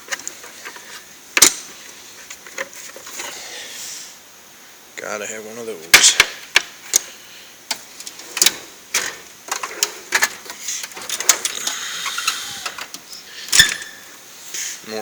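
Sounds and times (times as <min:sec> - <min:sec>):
metal sockets clinking together: 0:08.4 - 0:14.0.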